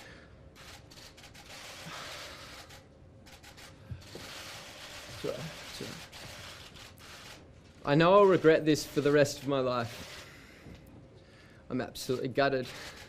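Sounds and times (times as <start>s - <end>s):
man's tearful breathing: 1.8s - 2.8s.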